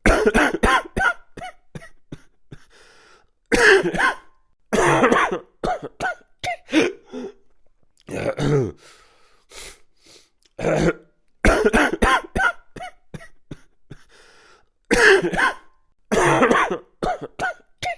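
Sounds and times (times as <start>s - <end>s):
person coughing: 0.0s - 2.7s, 3.5s - 7.4s, 8.1s - 8.8s, 10.6s - 14.1s, 14.9s - 17.9s.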